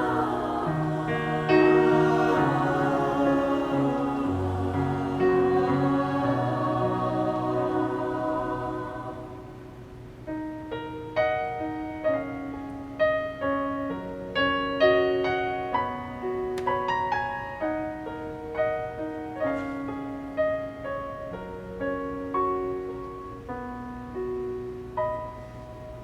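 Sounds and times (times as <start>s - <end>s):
choir chord: 0.0s - 10.8s
slow solo piano: 0.0s - 26.0s.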